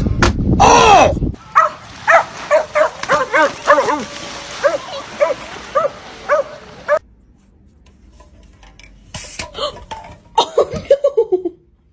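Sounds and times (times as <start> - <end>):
dog barking: 1.5 - 7.0.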